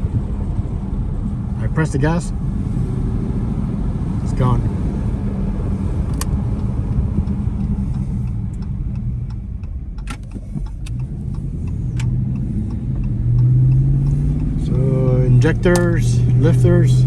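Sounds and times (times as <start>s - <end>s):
car engine rumble: 0.0s - 17.0s
road noise: 0.0s - 17.0s
sharp ticks: 6.1s - 14.8s, 15.4s - 16.0s.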